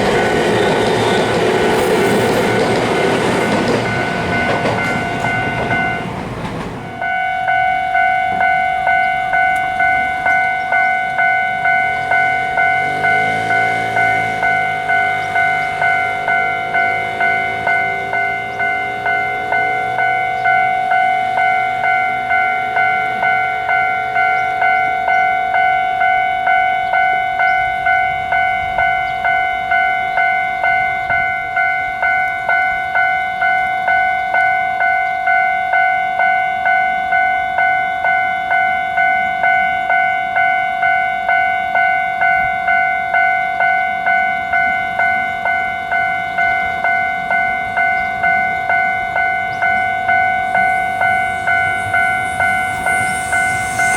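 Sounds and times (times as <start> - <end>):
level crossing warning bell: 0.0 - 53.9.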